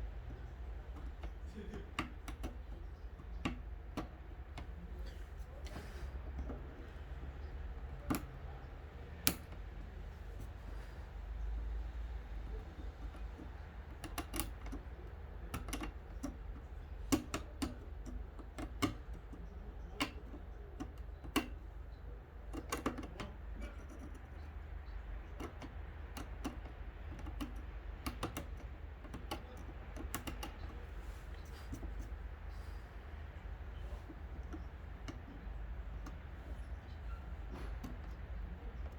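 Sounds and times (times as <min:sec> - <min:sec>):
low steady hum: 0:00.0 - 0:38.9.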